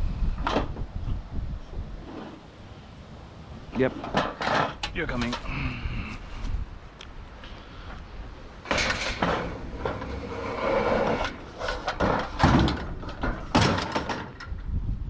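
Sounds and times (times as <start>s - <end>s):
objects knocking and scraping: 3.8s - 5.6s, 8.6s - 14.6s.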